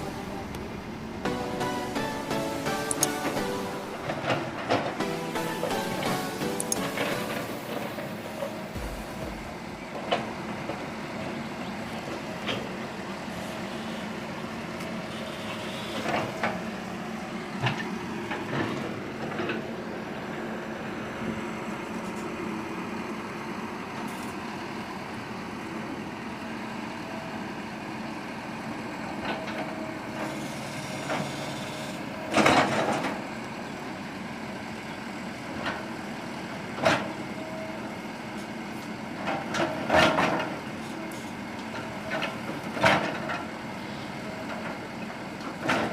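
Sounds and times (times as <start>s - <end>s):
excavator diesel engine running: 0.0s - 45.9s
knocks and clanks: 8.0s - 10.3s.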